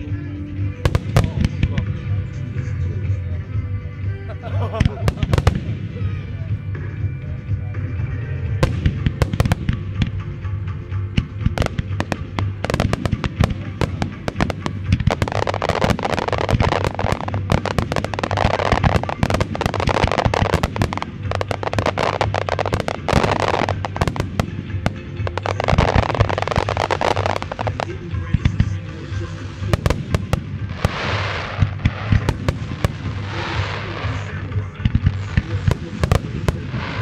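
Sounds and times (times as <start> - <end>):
dense firework crackle: 4.9 - 6.1, 11.3 - 37.0.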